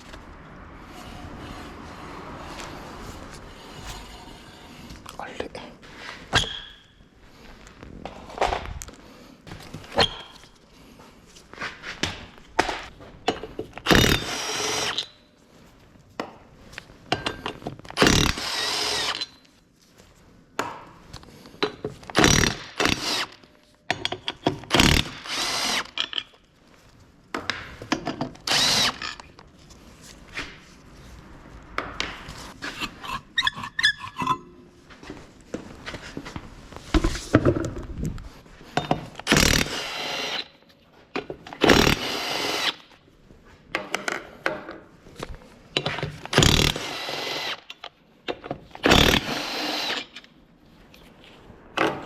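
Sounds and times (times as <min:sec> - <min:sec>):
power tool bursts: 0:13.9 - 0:15.1, 0:18.0 - 0:19.3, 0:22.2 - 0:23.4, 0:24.7 - 0:26.0, 0:39.3 - 0:40.5, 0:41.6 - 0:42.8, 0:46.3 - 0:47.7, 0:48.8 - 0:50.2.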